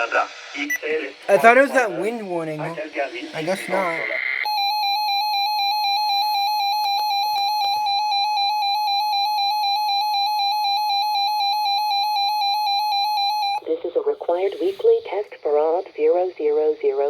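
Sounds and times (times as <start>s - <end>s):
pulsing high alarm tone: 0.7s - 13.6s.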